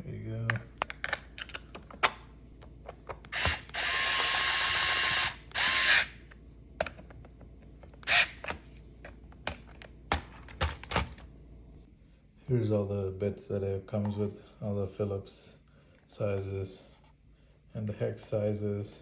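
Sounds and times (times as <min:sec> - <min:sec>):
electric screwdriver motor running: 0:03.3 - 0:06.3, 0:08.0 - 0:08.6.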